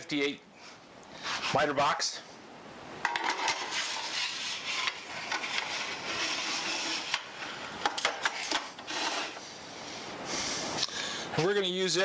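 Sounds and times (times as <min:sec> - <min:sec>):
steady hiss: 0:00.0 - 0:12.0
clicks and knocks of handled saw: 0:07.1 - 0:08.9.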